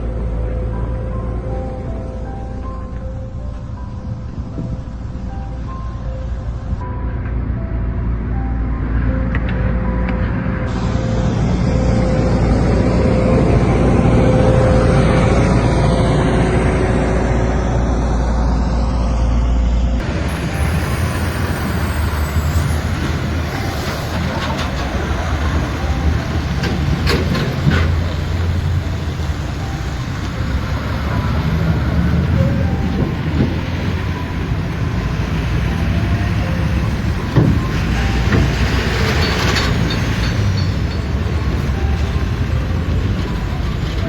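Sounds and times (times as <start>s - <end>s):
snow-clearing machinery rumbling: 7.3s - 44.0s.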